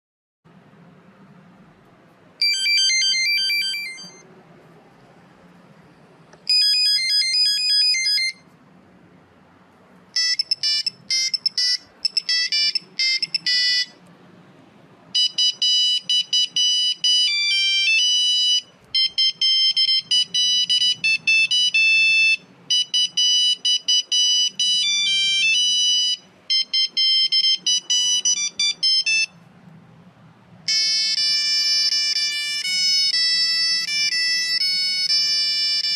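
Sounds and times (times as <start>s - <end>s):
phone ringtone beeping tunes: 2.4s - 4.2s, 6.5s - 8.4s, 10.2s - 14.0s, 15.2s - 29.4s, 30.7s - 35.9s.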